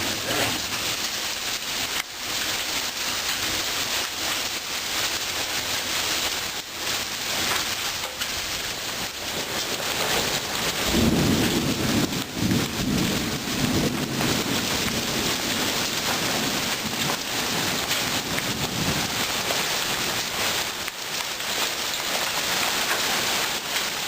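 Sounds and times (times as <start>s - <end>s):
rain falling: 0.0s - 24.0s
thunder rumbling: 8.5s - 20.8s.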